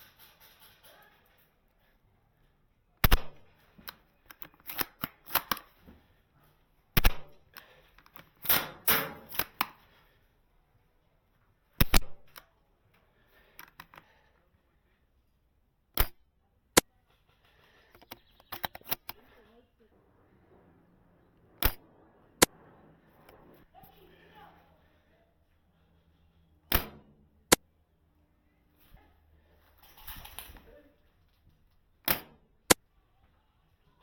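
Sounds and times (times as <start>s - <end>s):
quick clicks and rattles: 0.0s - 2.0s, 16.8s - 24.9s, 29.7s - 32.8s
airsoft gun shots: 3.0s - 3.5s, 7.0s - 7.4s, 11.8s - 12.3s, 26.7s - 27.2s, 32.1s - 32.4s.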